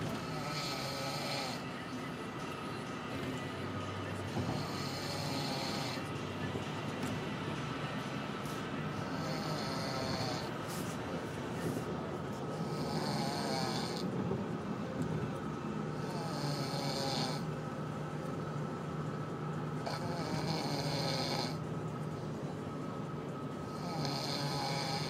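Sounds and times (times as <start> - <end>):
snoring: 0.2 - 1.6, 4.5 - 6.0, 9.1 - 10.5, 12.6 - 14.1, 16.0 - 17.5, 19.8 - 21.6, 23.7 - 25.0.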